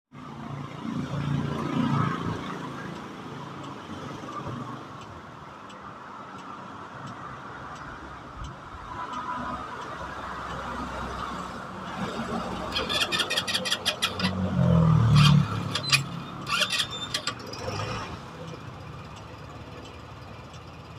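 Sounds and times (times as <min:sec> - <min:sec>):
motorcycle engine revving and idling: 0:12.6 - 0:20.9.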